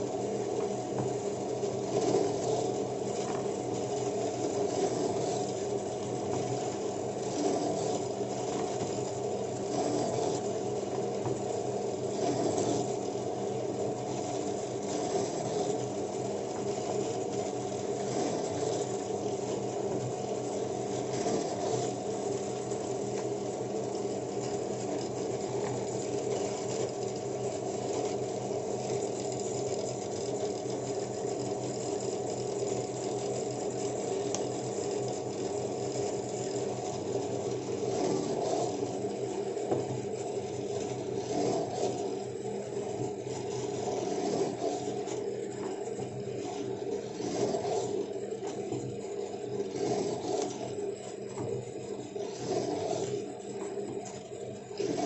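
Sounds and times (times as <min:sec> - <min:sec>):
cutting or rubbing noise: 0:09.7 - 0:10.5, 0:12.1 - 0:12.9, 0:41.2 - 0:42.0, 0:43.9 - 0:45.0, 0:47.1 - 0:48.0, 0:49.7 - 0:50.6, 0:52.3 - 0:53.2.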